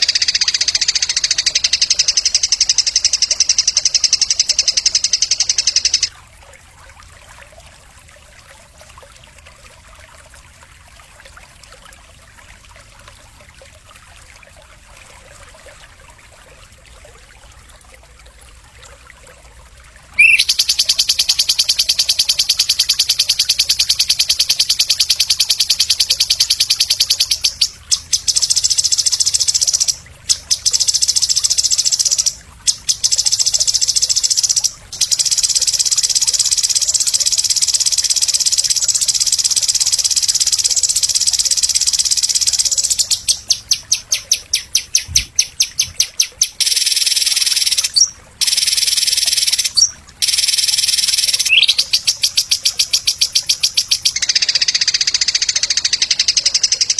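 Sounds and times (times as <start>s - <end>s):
rapid high-pitched bird trill: 0.0s - 6.1s, 20.2s - 56.9s.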